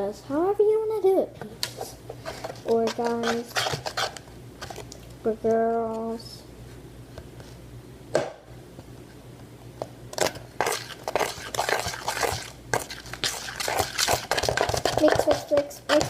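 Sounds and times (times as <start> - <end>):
slime squelching in a bowl: 1.6 - 5.1, 10.2 - 16.0.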